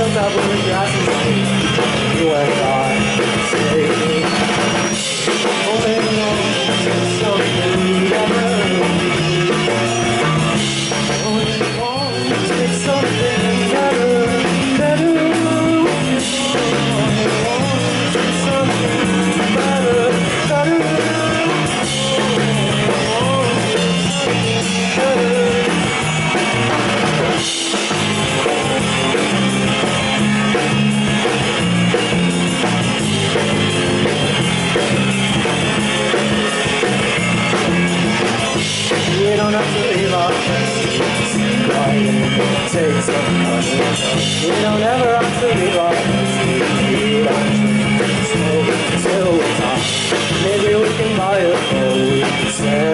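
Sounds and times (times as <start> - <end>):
bass guitar: 0.0 - 52.9
drum kit: 0.0 - 52.9
electric guitars: 0.0 - 52.9.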